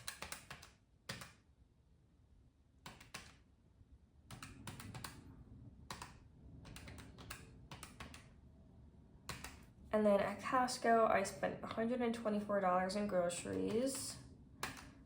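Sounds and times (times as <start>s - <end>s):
calculator keys clicking: 0.0s - 1.4s, 2.8s - 3.4s, 4.3s - 5.2s, 5.9s - 8.3s, 9.3s - 9.7s, 14.6s - 15.0s.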